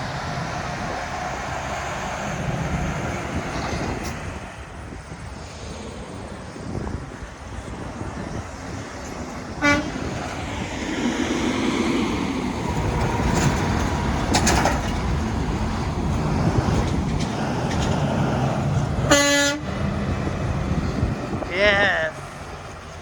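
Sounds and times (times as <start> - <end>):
truck engine rumble: 0.0 - 23.0
truck horn honking: 9.5 - 10.5, 18.9 - 20.0.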